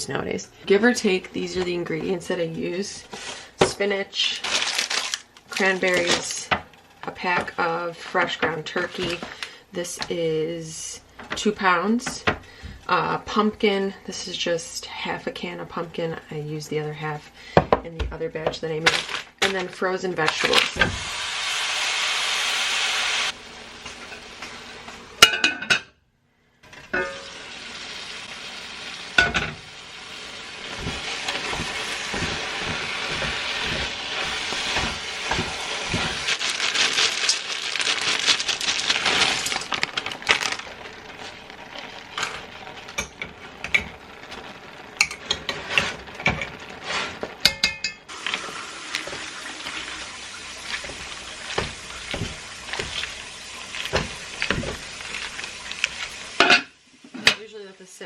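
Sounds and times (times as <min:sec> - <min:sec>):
food sizzling in a pan: 0:20.3 - 0:25.3, 0:26.9 - 0:58.0
spoon clinking and scraping pan: 0:26.9 - 0:27.3, 0:47.4 - 0:48.1.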